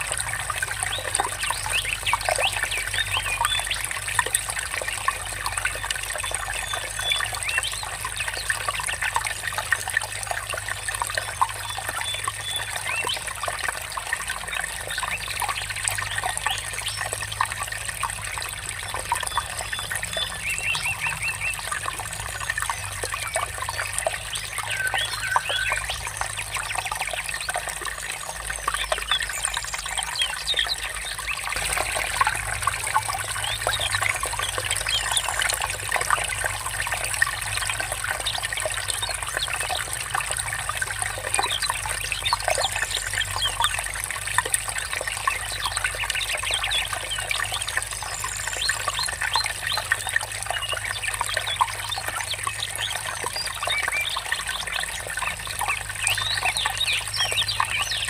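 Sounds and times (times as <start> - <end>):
water trickling and babbling: 0.0 - 58.0
birds chirping: 18.7 - 36.4.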